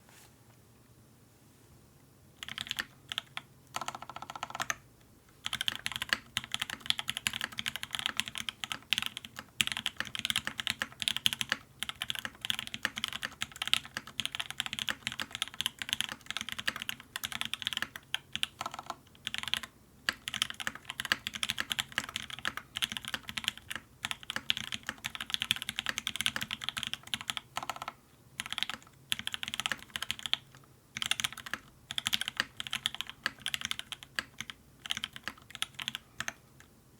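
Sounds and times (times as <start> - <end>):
typing on mechanical keyboard: 2.4 - 4.8, 5.4 - 36.4.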